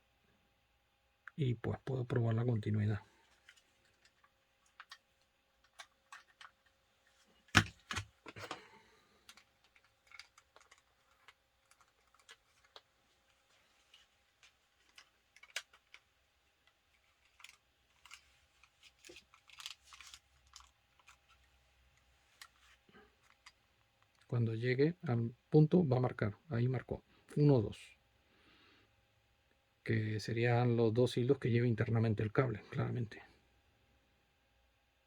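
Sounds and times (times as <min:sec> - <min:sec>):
plastic clicks and knocks: 0:07.5 - 0:08.6.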